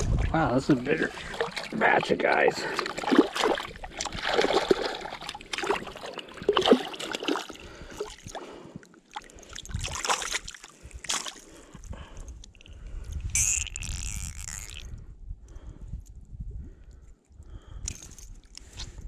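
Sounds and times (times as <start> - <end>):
water splashing and sloshing: 0.0 - 12.8.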